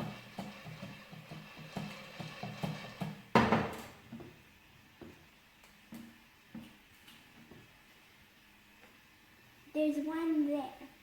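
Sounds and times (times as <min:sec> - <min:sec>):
popcorn rattling in shaken pan: 0:00.0 - 0:03.3.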